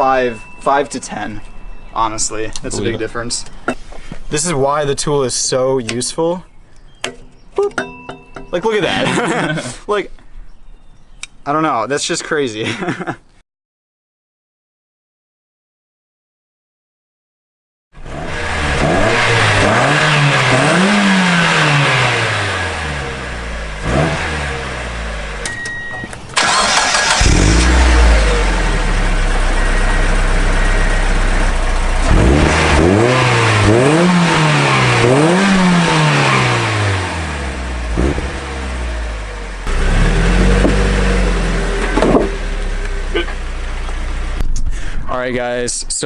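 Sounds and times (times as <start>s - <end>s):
car engine revving: 18.0s - 25.5s, 26.3s - 44.4s.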